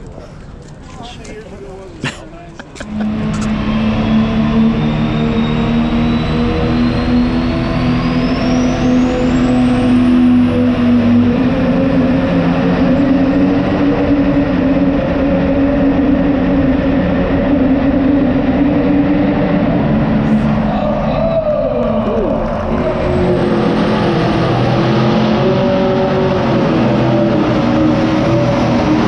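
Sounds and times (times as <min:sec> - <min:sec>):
tractor engine running hard: 0:02.7 - 0:29.0
high rising whistle: 0:02.9 - 0:29.0.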